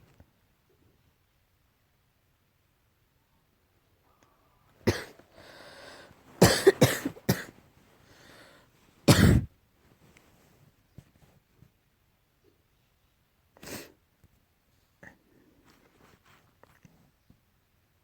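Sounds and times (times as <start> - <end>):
person coughing: 4.9 - 7.5, 9.1 - 9.5
noisy breath: 5.2 - 6.4, 8.0 - 8.8.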